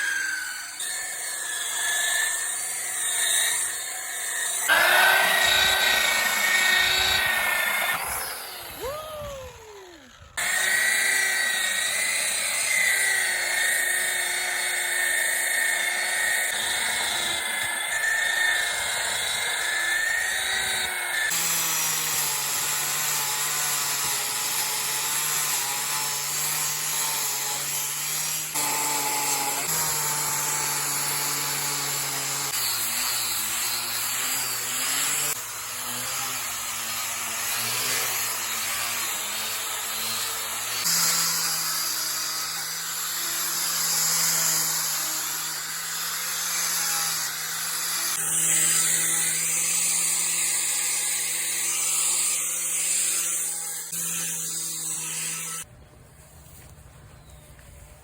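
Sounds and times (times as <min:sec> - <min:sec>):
power tool motor whining: 0:00.0 - 0:36.5.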